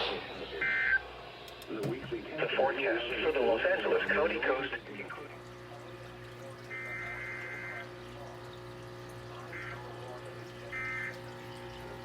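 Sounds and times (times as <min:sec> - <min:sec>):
radio hiss: 0:00.0 - 0:05.4
steady low hum: 0:00.0 - 0:12.0.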